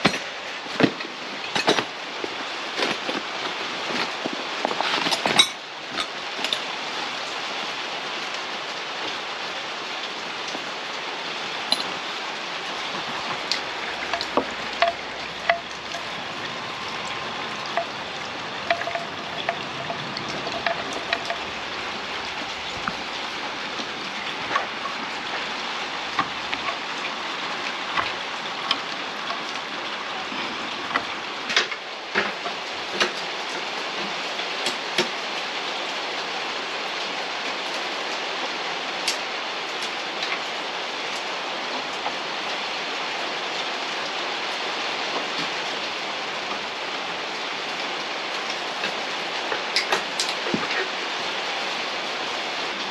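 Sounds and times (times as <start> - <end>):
hand tools clicking and tapping: 0.0 - 2.0, 11.7 - 12.0, 12.9 - 23.2
steady hiss: 0.0 - 52.9.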